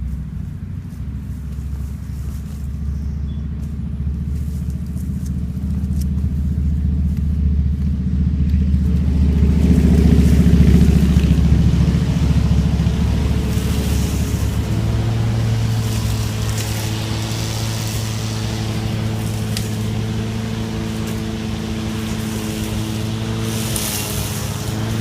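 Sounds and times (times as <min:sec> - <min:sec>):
electric lawn mower running: 0:01.2 - 0:25.0.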